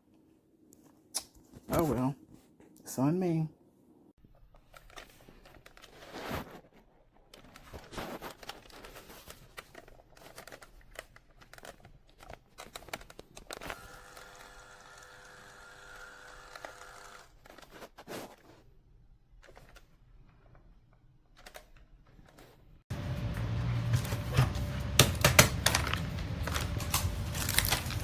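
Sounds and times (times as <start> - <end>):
mechanical whir: 13.7 - 17.3
packaging crinkling and tearing: 24.0 - 28.0.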